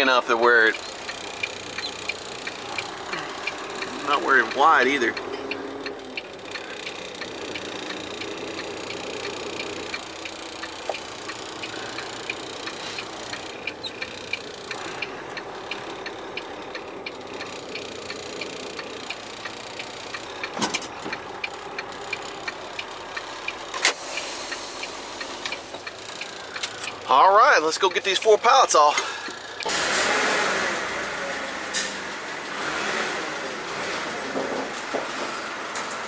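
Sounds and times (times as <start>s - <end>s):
hazard flashers ticking: 0.0s - 29.7s
diesel truck engine running: 0.0s - 36.0s.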